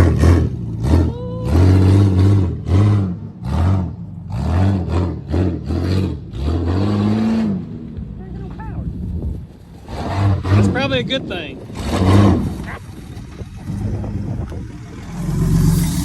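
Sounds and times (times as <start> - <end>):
vehicle engine revving: 0.0 - 8.2, 9.8 - 16.0
brief rising squeak: 15.4 - 16.0.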